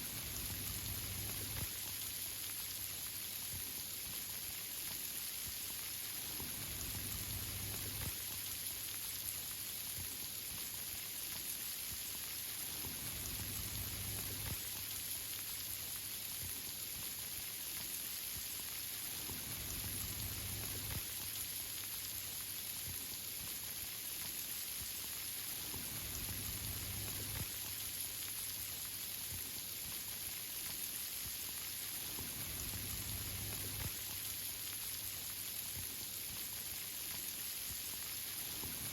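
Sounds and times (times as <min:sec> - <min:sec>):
rain pattering on leaves: 0:00.0 - 0:38.9.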